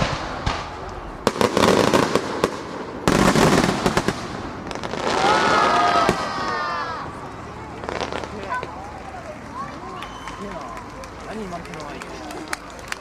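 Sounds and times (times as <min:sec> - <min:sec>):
fireworks bursting: 0:00.0 - 0:10.5
fireworks crackling: 0:00.0 - 0:13.0
onlookers' voices: 0:04.8 - 0:13.0.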